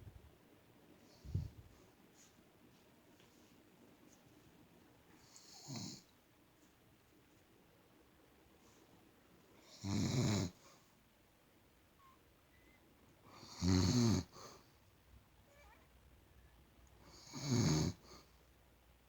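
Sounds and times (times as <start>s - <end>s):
woman snoring: 9.7s - 10.6s, 13.4s - 14.4s, 17.1s - 18.1s.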